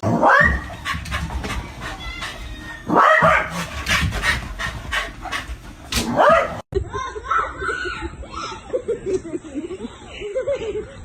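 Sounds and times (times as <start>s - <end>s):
dog yelping: 0.1s - 5.4s.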